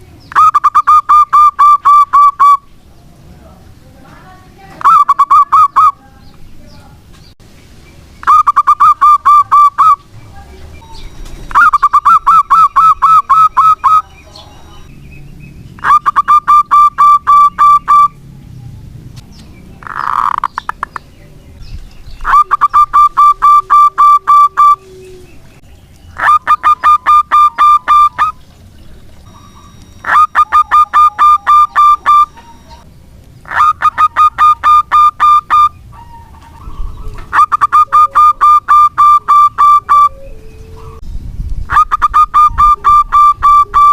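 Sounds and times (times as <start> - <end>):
dove cooing: 11.5 - 14.1, 15.8 - 18.2, 22.2 - 25.6, 26.2 - 41.0, 41.7 - 43.9.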